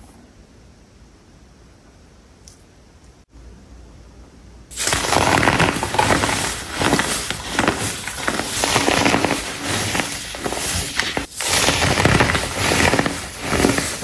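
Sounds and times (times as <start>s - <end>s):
crunching of compressed blocks: 4.7s - 14.0s.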